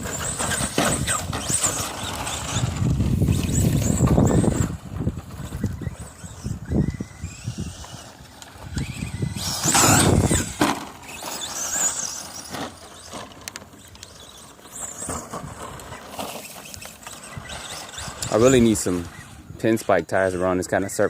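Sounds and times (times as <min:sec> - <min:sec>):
toy car motor whining: 0:00.0 - 0:21.0.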